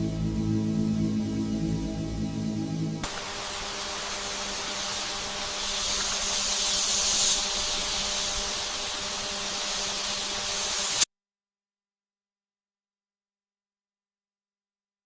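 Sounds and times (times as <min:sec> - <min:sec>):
spraying hiss: 0:03.0 - 0:11.1.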